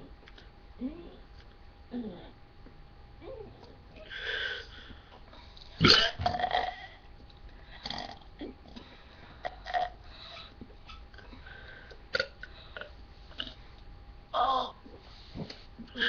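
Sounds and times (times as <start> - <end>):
person belching: 5.8 - 6.9.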